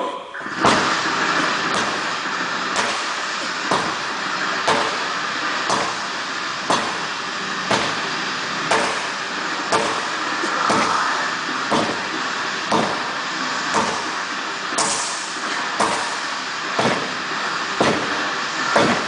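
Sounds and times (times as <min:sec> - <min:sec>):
sledgehammer thuds: 0:17.8 - 0:19.0.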